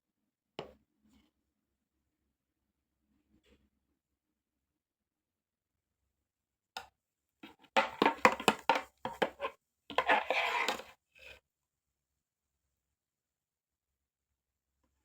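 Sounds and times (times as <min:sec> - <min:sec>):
scraping rustle: 0:09.2 - 0:10.9.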